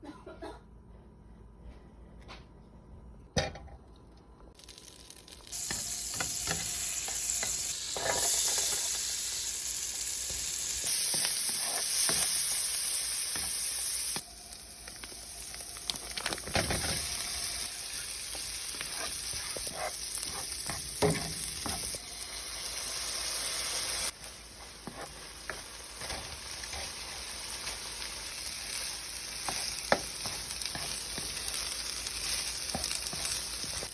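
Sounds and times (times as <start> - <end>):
rice sizzling in a pan: 4.6 - 33.9.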